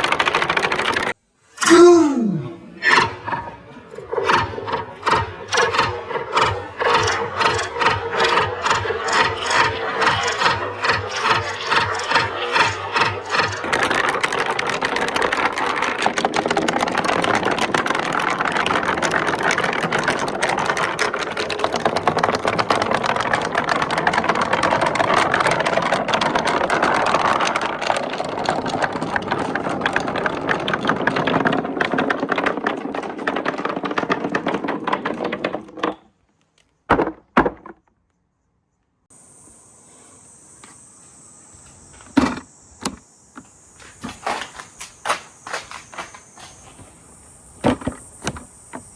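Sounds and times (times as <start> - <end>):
marbles rolling and clattering: 0.0 - 38.0, 41.8 - 46.8
high-pitched hiss: 39.1 - 48.9.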